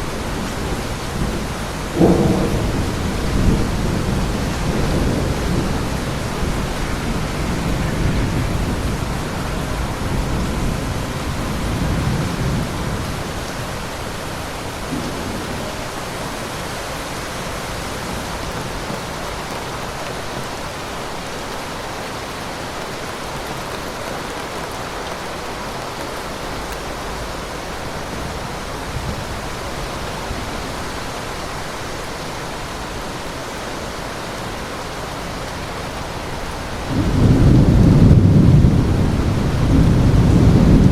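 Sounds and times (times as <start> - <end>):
thunderclap and rumble: 0.0 - 19.5, 35.5 - 40.9
heavy rain: 0.0 - 40.9.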